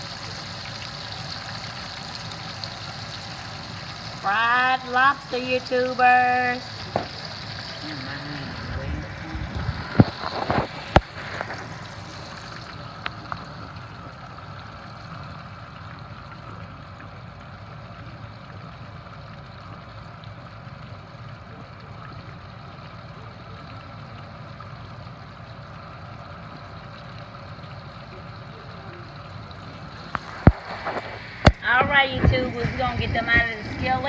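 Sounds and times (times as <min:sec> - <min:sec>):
food sizzling in hot oil: 0:00.0 - 0:20.7.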